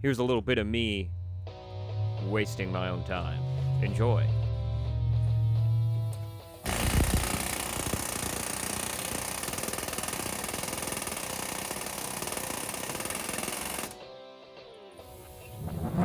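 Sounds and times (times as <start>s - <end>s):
background music: 0.8s - 6.7s, 11.2s - 16.0s.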